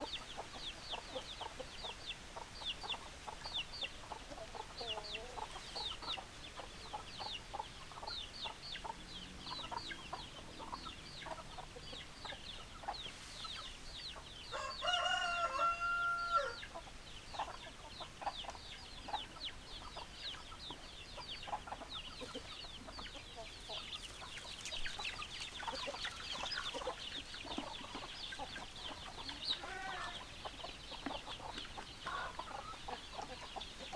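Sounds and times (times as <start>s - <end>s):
hens clucking: 0.1s - 33.9s
rooster crowing: 14.5s - 16.6s, 29.6s - 30.2s.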